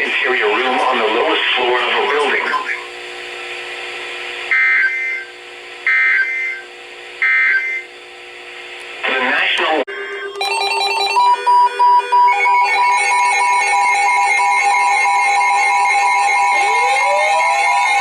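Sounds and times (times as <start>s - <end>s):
emergency alert tones: 9.9s - 18.0s
rising pitch tone: 9.9s - 18.0s.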